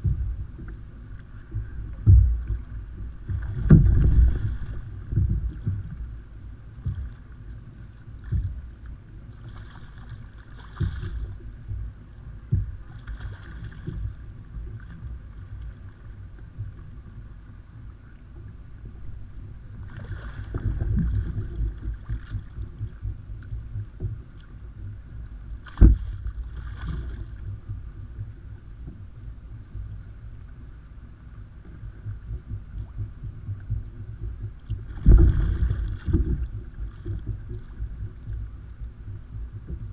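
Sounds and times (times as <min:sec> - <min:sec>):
water lapping against a hull: 0:00.0 - 0:39.9
sharp knock on hull: 0:01.6 - 0:06.0, 0:25.6 - 0:26.3.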